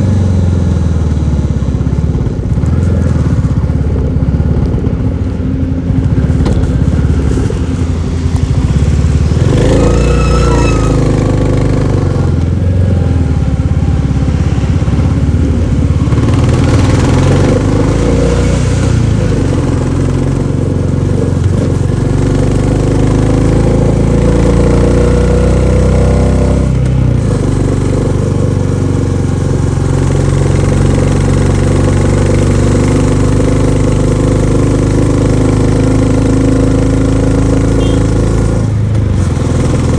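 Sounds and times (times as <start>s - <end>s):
motorcycle engine thumping: 0.1s - 9.8s.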